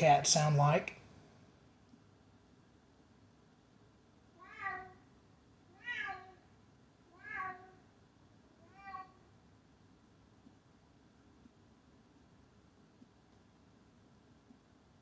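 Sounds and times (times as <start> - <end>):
recorded cat meows from speaker: 4.4 - 5.0, 5.7 - 6.4, 7.1 - 7.8, 8.6 - 9.2.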